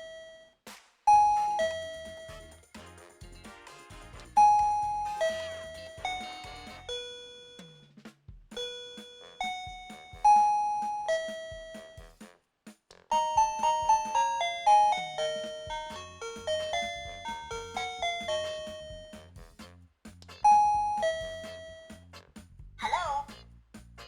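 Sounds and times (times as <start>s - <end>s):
electronic doorbell chime tunes: 13.2s - 19.2s.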